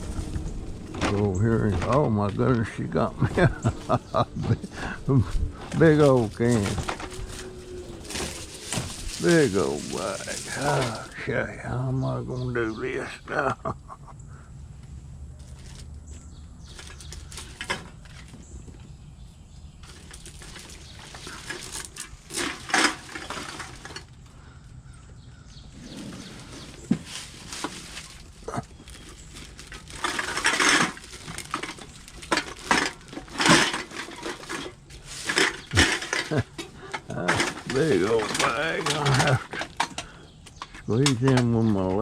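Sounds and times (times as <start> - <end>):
aluminium cans clinking and crackling: 0.0 - 11.3, 16.6 - 18.5, 19.8 - 24.2, 26.3 - 42.0.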